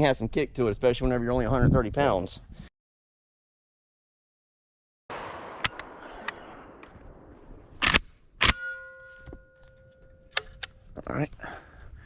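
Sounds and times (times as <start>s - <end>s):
outdoor background: 0.0s - 2.7s, 5.1s - 12.0s
shotgun shots: 5.1s - 8.9s
steady ringing tone: 8.5s - 10.4s.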